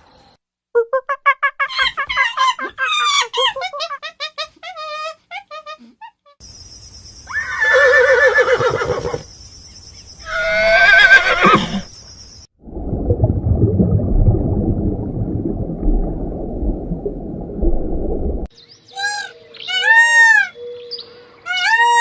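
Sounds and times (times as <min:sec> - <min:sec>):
horse neighing: 0:07.4 - 0:09.2, 0:10.3 - 0:11.9
steady low noise: 0:12.6 - 0:18.5.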